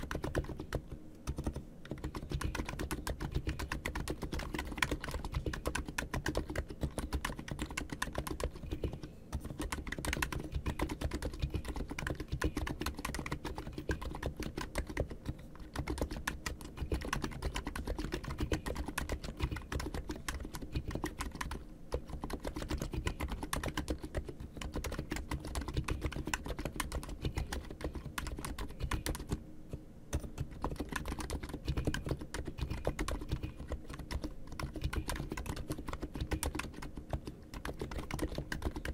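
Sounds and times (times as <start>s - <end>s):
fast keyboard typing: 0.0s - 29.4s, 30.1s - 38.9s.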